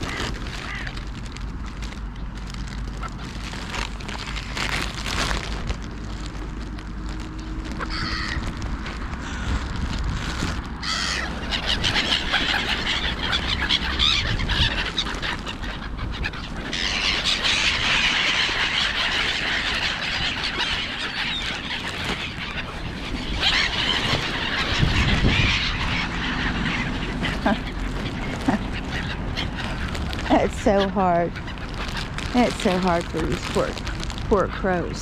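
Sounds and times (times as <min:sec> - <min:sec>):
birds calling harshly: 0:00.0 - 0:01.0, 0:07.4 - 0:35.0.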